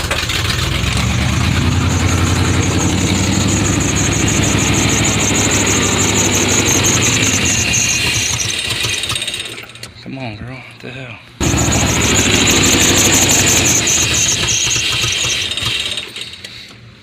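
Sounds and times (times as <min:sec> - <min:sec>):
engine idling: 0:00.0 - 0:09.7, 0:11.4 - 0:16.3
fast high ticking: 0:00.4 - 0:09.1, 0:11.4 - 0:15.9.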